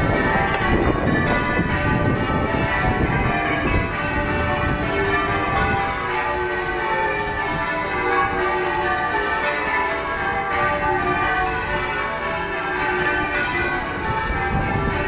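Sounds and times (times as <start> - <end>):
church bells ringing: 0.0 - 15.0.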